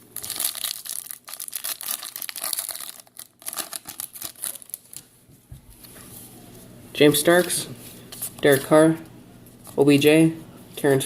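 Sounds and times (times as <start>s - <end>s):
foil wrapper crinkling and tearing: 0.0s - 5.1s.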